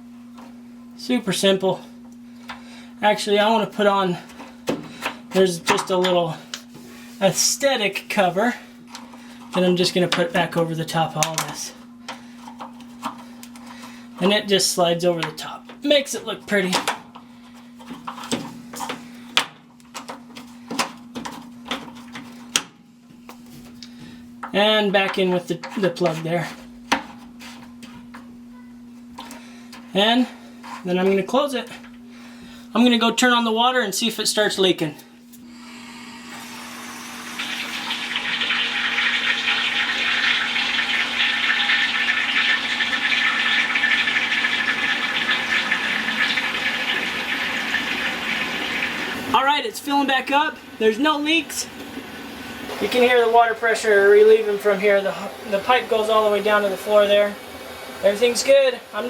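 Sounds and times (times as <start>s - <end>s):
faint steady hum: 0.0s - 59.0s
air venting from valve: 35.5s - 49.3s
water rushing into tank: 36.4s - 49.4s.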